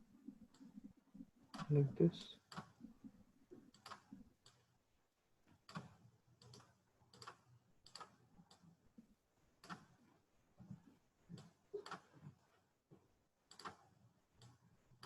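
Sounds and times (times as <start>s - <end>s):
computer mouse clicks: 5.6s - 8.6s, 13.5s - 13.8s.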